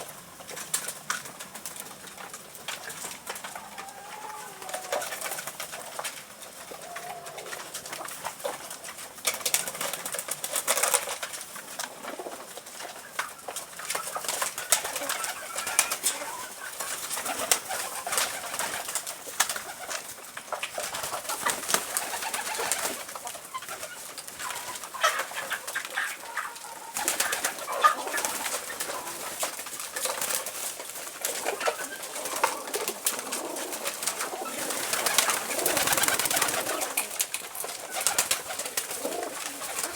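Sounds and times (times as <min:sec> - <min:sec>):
pigeons cooing: 0:00.0 - 0:39.9
rustling: 0:27.0 - 0:39.9.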